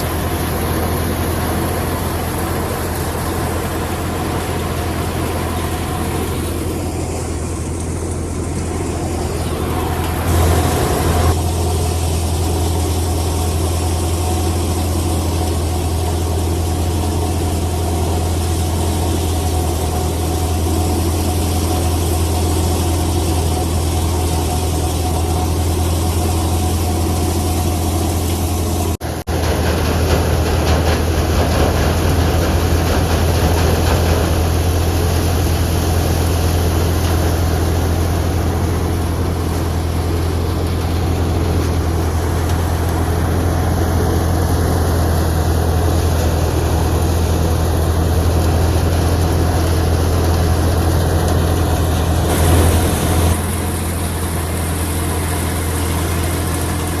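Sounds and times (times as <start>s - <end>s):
tractor engine running: 0.0s - 57.0s
threshing drum noise: 29.0s - 35.8s, 50.6s - 57.0s.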